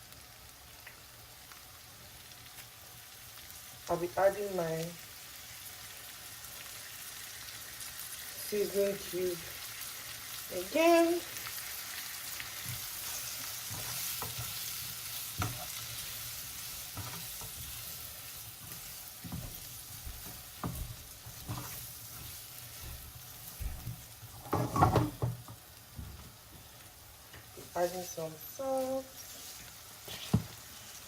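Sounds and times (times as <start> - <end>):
vegetables sizzling in a frying pan: 0.0 - 31.0
spatula scraping a pan: 12.4 - 25.2, 29.1 - 31.0.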